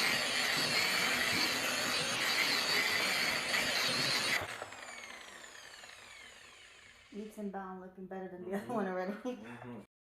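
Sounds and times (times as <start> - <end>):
electric buffer machine whining: 0.0 - 7.2.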